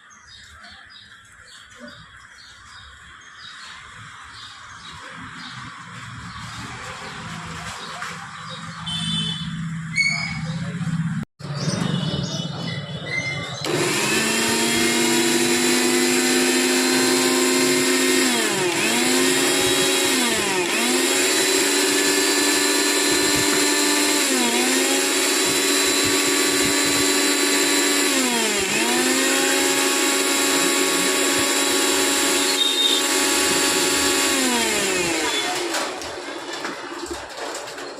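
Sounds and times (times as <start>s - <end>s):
mixer grinder motor whining: 13.6s - 36.2s.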